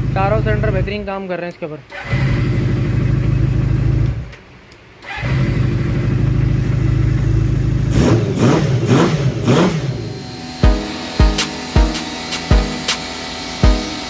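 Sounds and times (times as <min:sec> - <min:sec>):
motorcycle engine idling: 0:02.3 - 0:04.3, 0:05.5 - 0:07.9.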